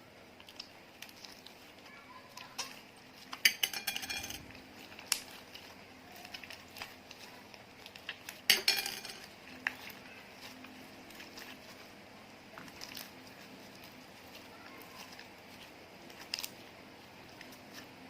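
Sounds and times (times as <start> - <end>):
slime being mixed: 0.0 - 18.0
utensil clinking against container: 3.4 - 4.5, 8.5 - 9.3.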